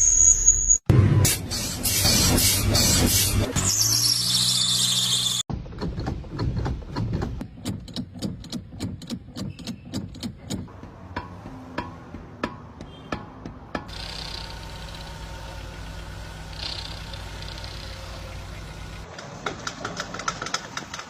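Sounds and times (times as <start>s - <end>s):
high squeal: 0.0s - 5.5s.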